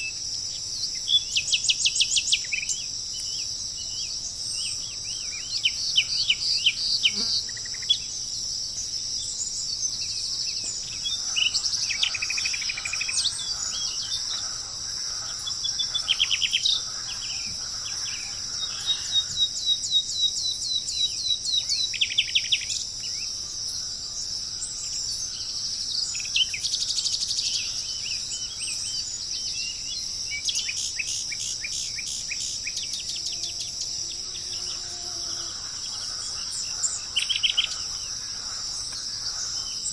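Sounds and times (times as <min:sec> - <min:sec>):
birds chirping and trilling: 0:00.0 - 0:39.9
insect chorus: 0:00.0 - 0:39.9.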